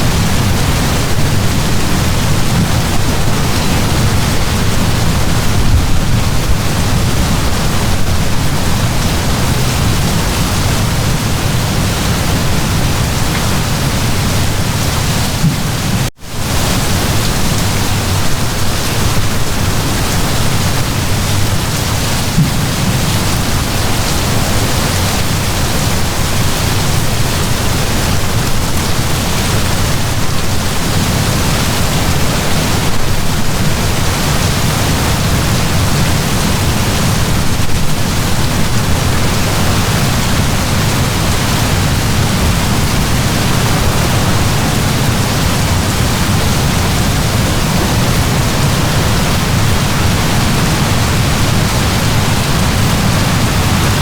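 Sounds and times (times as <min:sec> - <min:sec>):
heavy rain pouring: 0:00.0 - 0:54.0.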